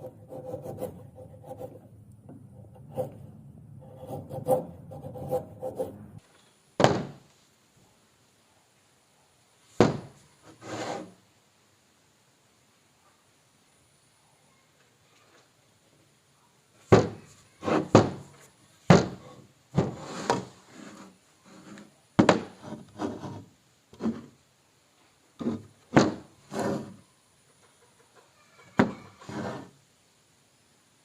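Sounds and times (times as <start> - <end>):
wooden rattle or scrape: 10.4 - 11.1, 16.9 - 18.3, 18.9 - 24.4, 25.4 - 27.0, 28.8 - 29.7.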